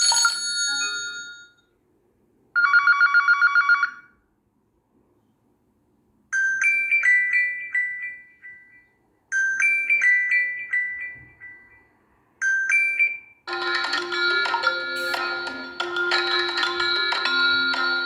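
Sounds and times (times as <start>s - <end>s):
phone ringtone melody: 13.5s - 18.0s.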